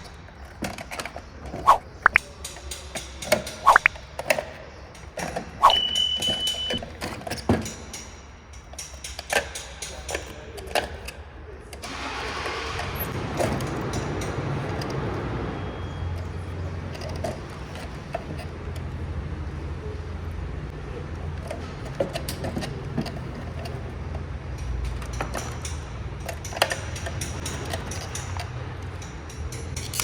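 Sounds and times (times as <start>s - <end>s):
sharp clicks and knocks: 0.0s - 12.0s, 13.1s - 15.5s, 21.2s - 30.0s.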